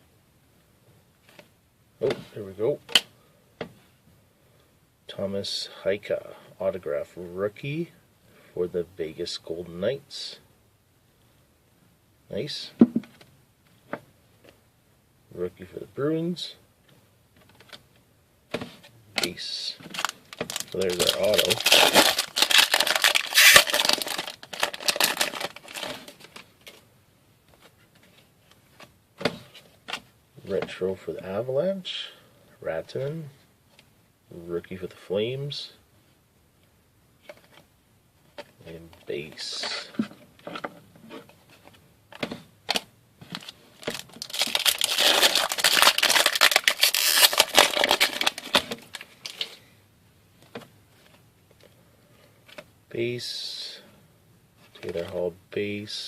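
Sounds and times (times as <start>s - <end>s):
foil wrapper crinkling: 19.9s - 26.5s, 43.3s - 49.5s.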